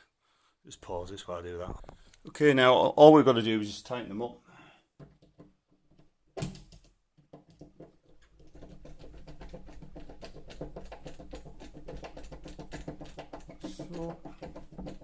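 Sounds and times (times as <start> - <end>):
knock: 7.2 - 15.0.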